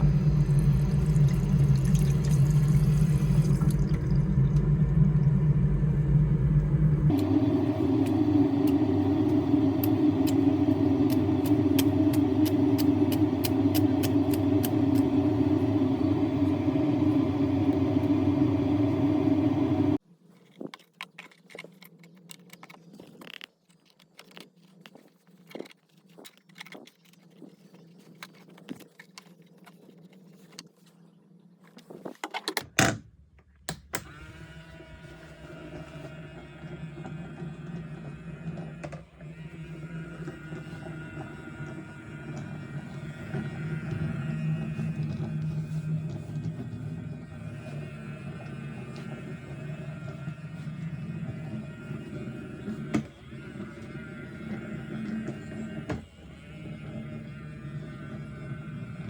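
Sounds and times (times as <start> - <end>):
robot vacuum motor hum: 0.0 - 20.0, 34.0 - 59.0.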